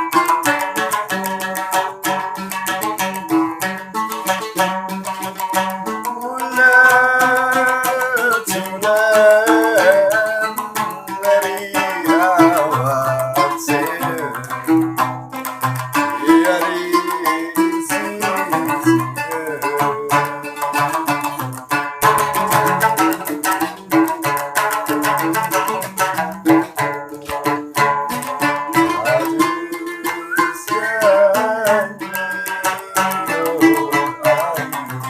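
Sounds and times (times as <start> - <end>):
plucked lute melody: 0.0 - 35.0
person singing long wavering notes: 5.6 - 15.0, 15.9 - 21.4, 28.1 - 35.0.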